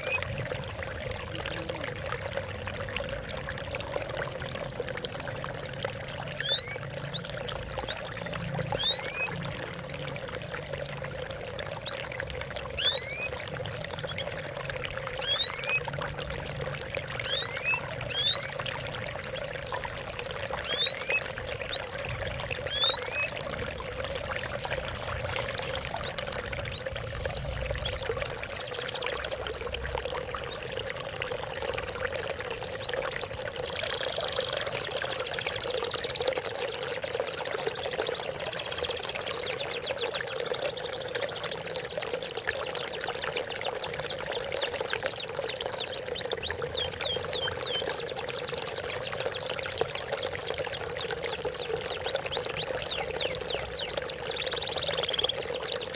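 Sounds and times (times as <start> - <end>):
water trickling and pouring: 0.0 - 55.9
bird chirping: 17.2 - 18.6, 22.6 - 23.3, 32.8 - 55.9.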